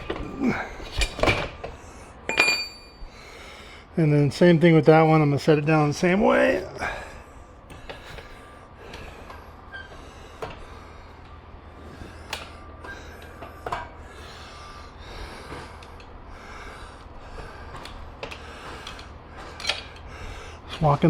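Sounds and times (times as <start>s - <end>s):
steady low hum: 0.0s - 21.0s
metal parts clicking and knocking: 19.6s - 20.0s.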